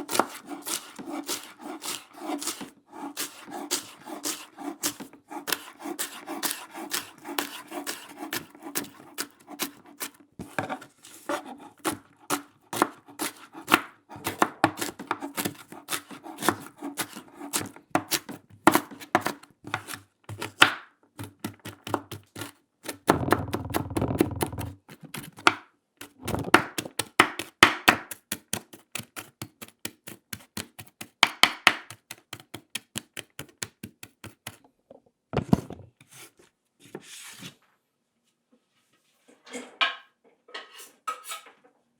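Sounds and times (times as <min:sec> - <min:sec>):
knife chopping on wooden board: 0:00.0 - 0:34.6.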